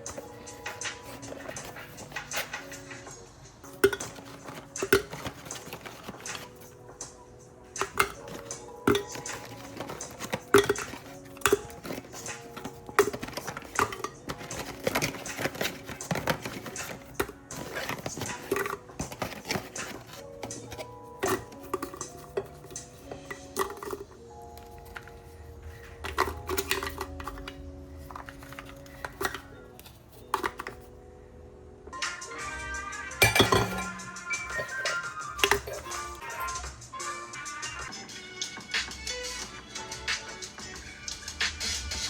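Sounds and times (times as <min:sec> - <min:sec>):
dishes and cutlery clinking: 0:00.0 - 0:03.1, 0:03.7 - 0:30.9, 0:33.2 - 0:36.5
soft background music: 0:00.0 - 0:42.0.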